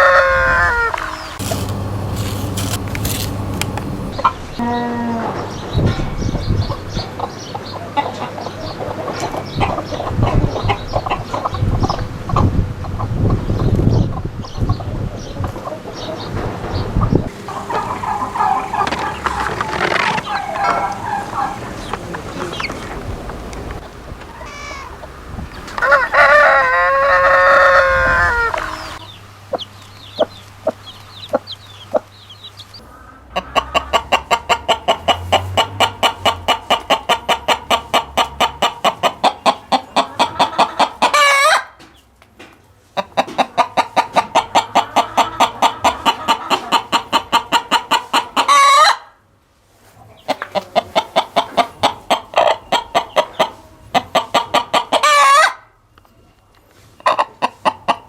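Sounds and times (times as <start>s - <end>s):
rooster crowing: 0.0s - 4.8s, 17.3s - 25.0s, 25.7s - 29.1s
hen clucking and cackling: 0.0s - 5.4s, 7.2s - 16.4s, 17.0s - 41.8s, 42.9s - 49.2s, 50.0s - 55.7s, 57.0s - 58.0s.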